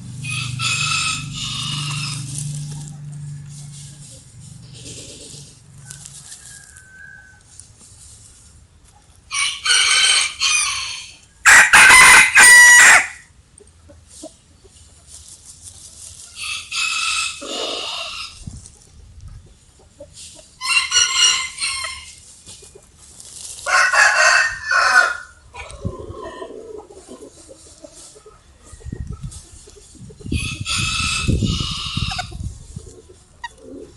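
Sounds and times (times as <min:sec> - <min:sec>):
rooster crowing: 0:00.1 - 0:04.1, 0:05.8 - 0:07.6, 0:09.3 - 0:13.3, 0:23.6 - 0:26.6.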